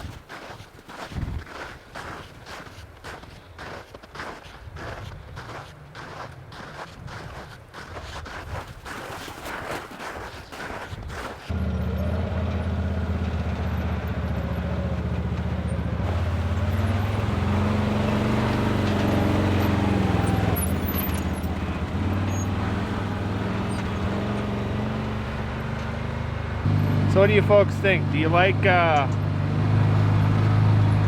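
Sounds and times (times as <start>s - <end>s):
off-road vehicle engine running: 11.5s - 31.0s.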